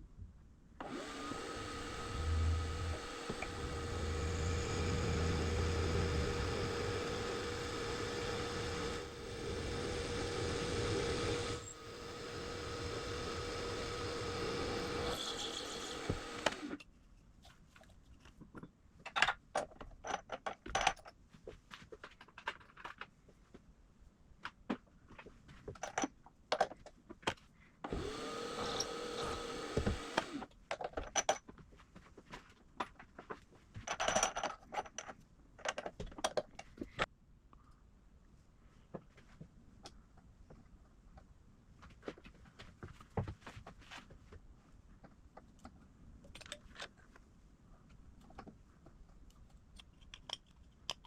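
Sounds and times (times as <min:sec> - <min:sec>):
milling machine motor running: 0:00.8 - 0:16.8, 0:27.9 - 0:30.4.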